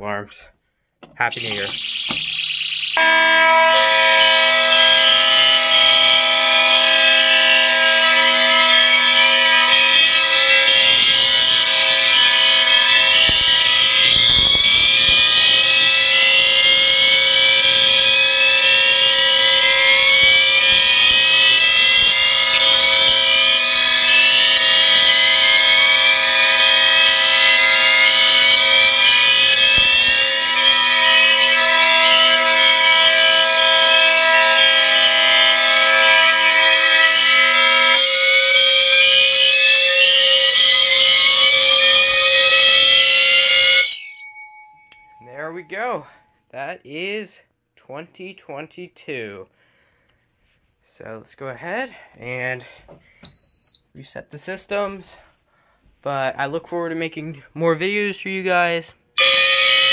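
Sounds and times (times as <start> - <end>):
fire alarm horns: 1.3 - 46.5, 52.6 - 53.9, 59.1 - 59.9.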